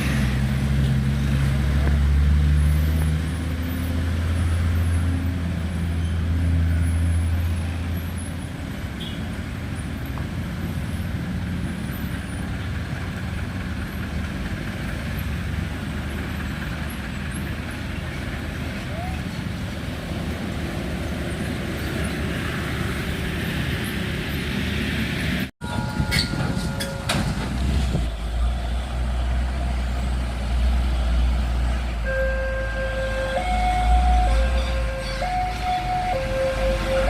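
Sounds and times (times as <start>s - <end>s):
road traffic noise: 0.0s - 37.0s
heavy diesel engine running: 9.5s - 19.6s.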